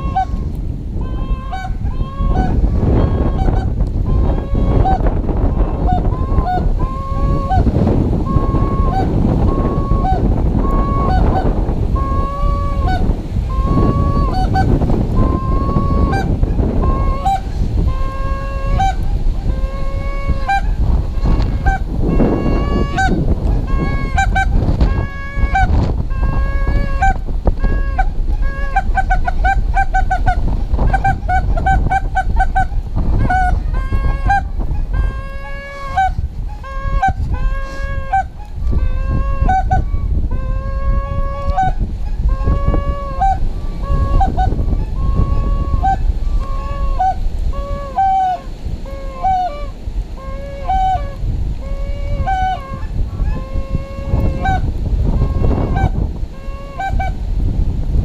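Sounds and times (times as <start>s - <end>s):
duck call quacks: 0.0s - 54.7s, 55.3s - 57.2s
wind rumble on microphone: 0.0s - 58.0s.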